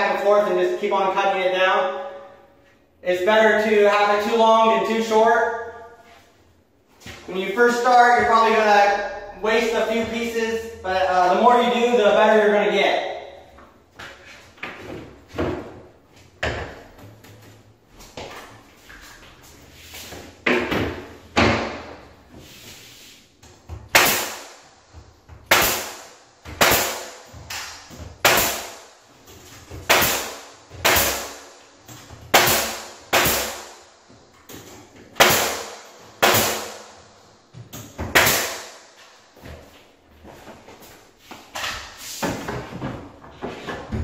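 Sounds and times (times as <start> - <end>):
nails hammered into wood: 23.9 - 24.6, 25.4 - 28.9, 29.8 - 31.5, 32.2 - 33.8, 35.2 - 36.9, 38.0 - 38.8.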